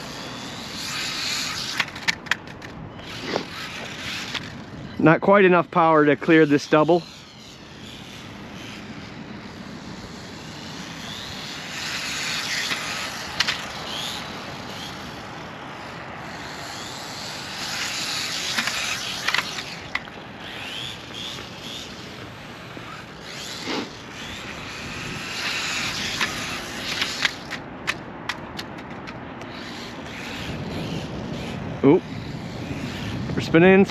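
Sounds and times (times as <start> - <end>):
tyres rolling on concrete: 0.0 - 4.7
small electric motor whining: 0.0 - 33.9
sharp plastic clacks: 1.0 - 4.7, 11.8 - 13.8, 17.6 - 21.9, 25.3 - 30.2.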